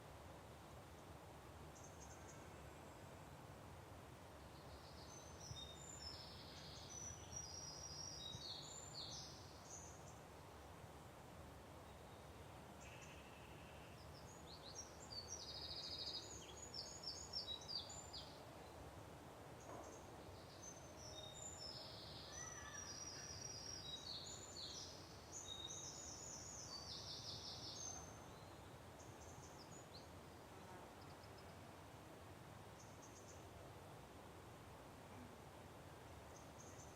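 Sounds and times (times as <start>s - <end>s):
faint steady hiss: 0.0s - 36.9s
songbirds chirping and trilling: 4.4s - 10.3s, 11.9s - 18.9s, 19.6s - 31.8s.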